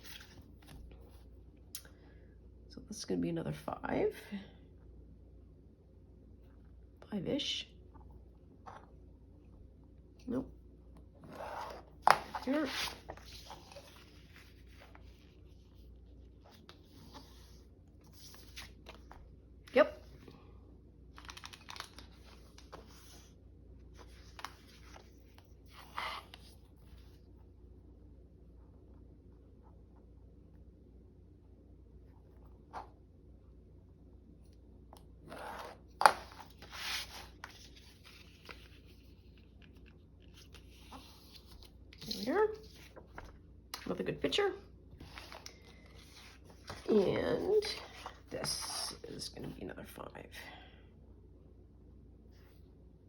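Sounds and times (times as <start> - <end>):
paper rustling: 11.4 - 19.2, 21.2 - 23.3, 36.0 - 43.4, 45.0 - 48.8.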